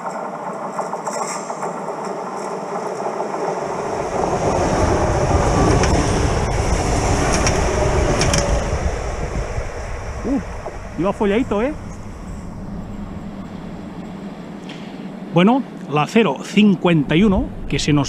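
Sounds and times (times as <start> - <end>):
train wheel clatter: 0.0 - 15.1
electric train passing: 0.0 - 18.0.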